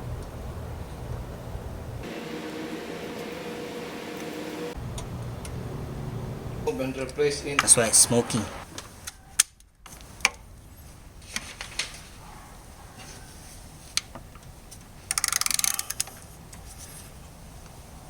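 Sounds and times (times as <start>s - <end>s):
hand ratchet clicking: 15.1s - 16.2s.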